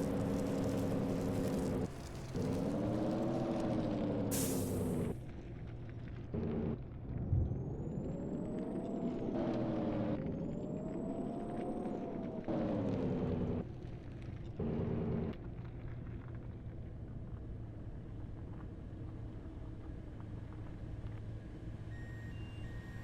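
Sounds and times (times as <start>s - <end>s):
vehicle engine revving: 0.0s - 5.1s, 6.3s - 6.8s, 8.0s - 13.6s, 14.6s - 15.4s.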